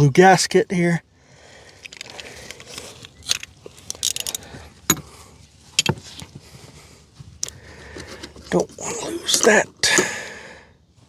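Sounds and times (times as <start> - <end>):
small parts clicking and rattling: 1.6 - 6.3.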